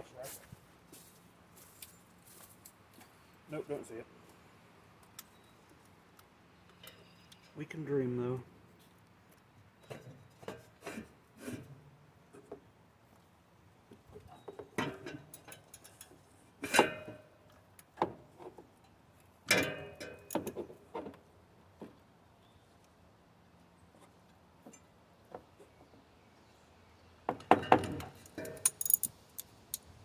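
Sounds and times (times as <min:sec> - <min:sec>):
metal tools clinking on engine: 0:14.9 - 0:16.2, 0:27.6 - 0:29.5.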